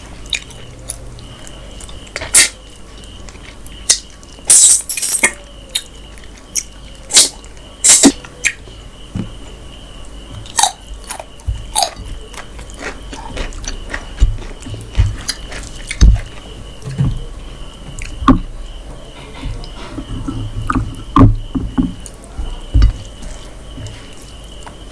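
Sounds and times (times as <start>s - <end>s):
chewing and mouth smacks: 0.2s - 4.4s, 10.5s - 16.4s
soft low thumps: 13.7s - 24.1s.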